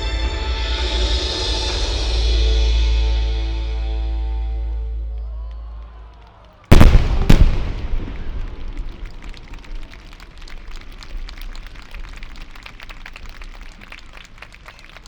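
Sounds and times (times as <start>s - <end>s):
music: 0.0s - 6.0s
firework shell bursts: 6.7s - 11.6s
firework crackling: 6.7s - 14.6s.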